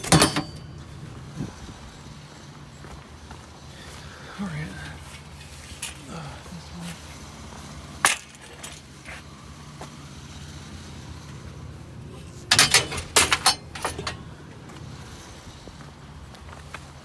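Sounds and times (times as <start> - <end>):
scrap metal clinking and clattering: 0.0 - 1.2, 8.0 - 9.3, 12.3 - 15.0
low vehicle hum: 0.0 - 17.0.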